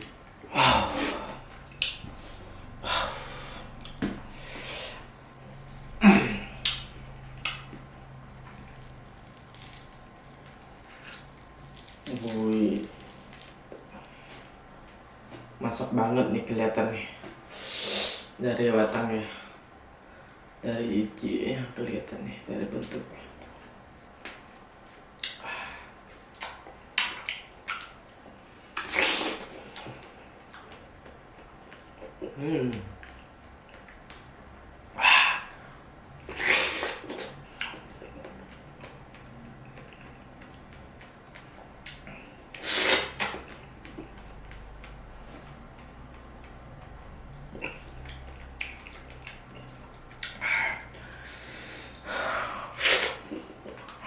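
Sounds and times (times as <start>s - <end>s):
steady low hum: 0.0s - 28.9s, 29.5s - 54.0s
wet chewing and smacking: 1.5s - 2.1s, 5.0s - 15.6s, 26.1s - 32.3s, 36.2s - 51.3s
hissing breath: 2.3s - 5.0s, 17.5s - 18.3s, 50.4s - 53.5s
wet eating smacks: 6.4s - 7.9s, 36.2s - 54.0s
noisy slurp: 36.3s - 37.8s, 42.1s - 44.3s, 47.5s - 54.0s.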